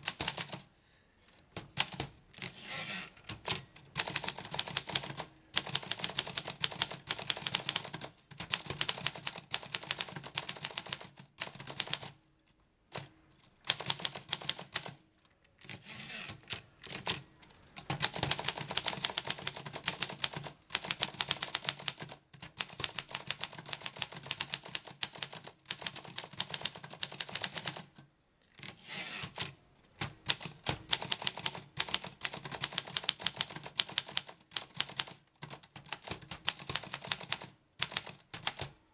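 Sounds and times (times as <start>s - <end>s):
typewriter bell ring: 0.0s - 0.8s, 27.0s - 29.6s
typewriter key strikes: 22.5s - 38.7s.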